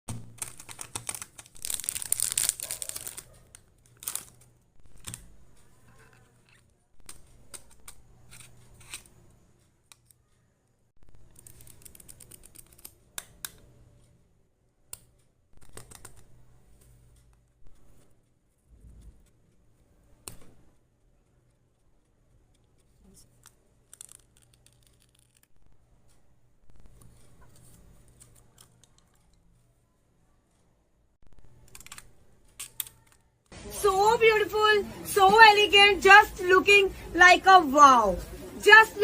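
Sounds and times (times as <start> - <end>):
packaging crinkling and rustling: 0.1 - 5.4.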